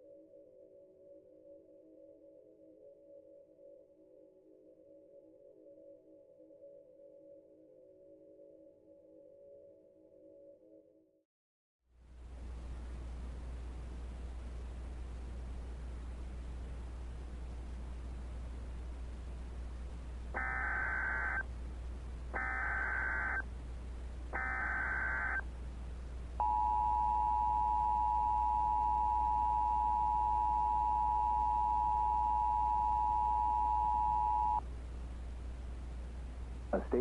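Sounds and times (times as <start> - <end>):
low steady hum: 12.0 - 37.0
data bursts: 20.4 - 21.4, 22.4 - 23.4, 24.4 - 25.4, 26.4 - 34.6
two-tone attention signal: 26.4 - 34.6.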